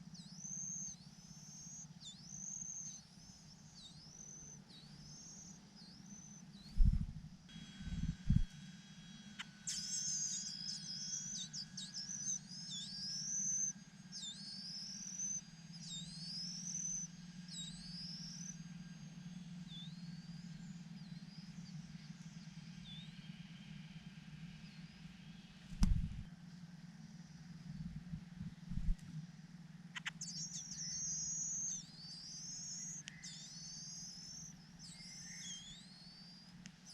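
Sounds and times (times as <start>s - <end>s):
low hum: 6.6s - 8.5s, 25.7s - 26.3s, 27.4s - 29.5s
small bird swooping calls: 6.7s - 7.2s, 7.8s - 8.5s, 30.0s - 30.7s
sharp knock: 25.8s - 26.2s.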